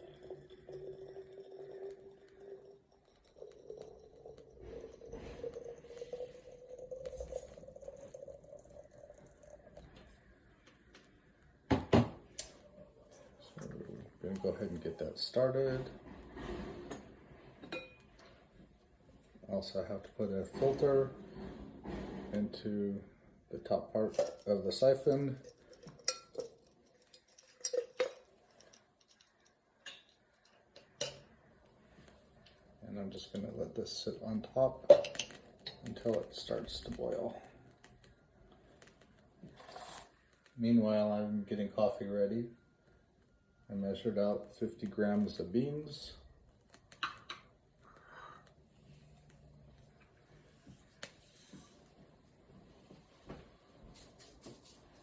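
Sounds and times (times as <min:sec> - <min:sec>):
glass and metal clinks: 0:00.0 - 0:09.2, 0:17.6 - 0:18.1, 0:24.0 - 0:31.3
soft crackle: 0:00.0 - 0:11.7, 0:24.8 - 0:40.8, 0:42.6 - 0:55.0.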